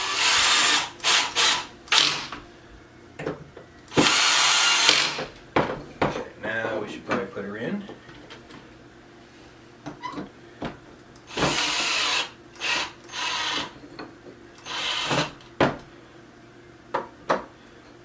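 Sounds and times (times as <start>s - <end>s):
power drill-driver whirring: 0.0s - 2.4s, 3.9s - 5.3s, 11.3s - 13.8s, 14.6s - 15.4s.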